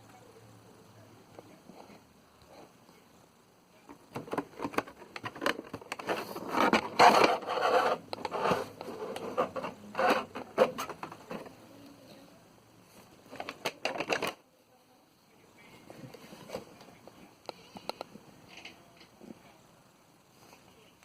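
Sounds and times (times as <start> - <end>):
packaging scraping and clicking: 4.2 - 11.5.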